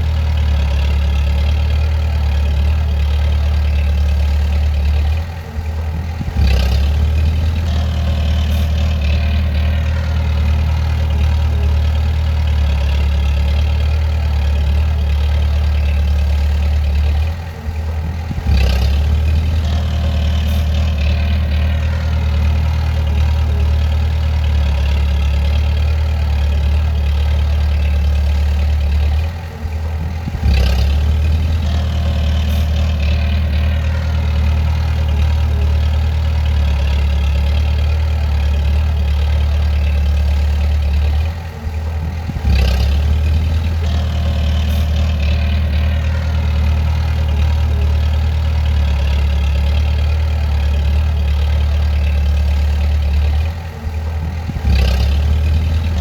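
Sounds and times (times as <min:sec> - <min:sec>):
bulldozer diesel engine drone: 0:00.0 - 0:56.0.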